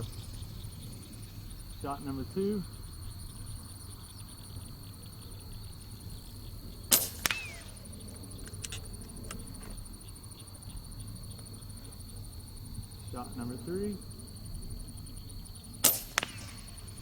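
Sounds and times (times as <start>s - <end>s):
insects buzzing: 0.0s - 17.0s
air rifle shot crack: 6.9s - 9.4s, 15.8s - 17.0s.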